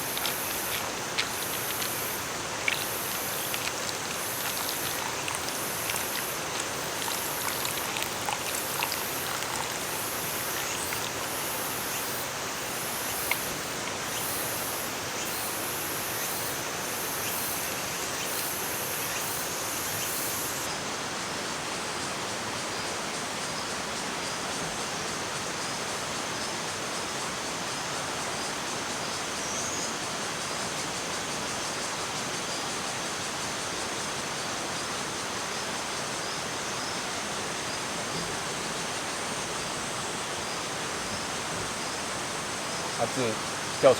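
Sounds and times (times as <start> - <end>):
stream rushing over rocks: 0.0 - 16.9
high insect song: 0.0 - 20.7, 35.5 - 43.9.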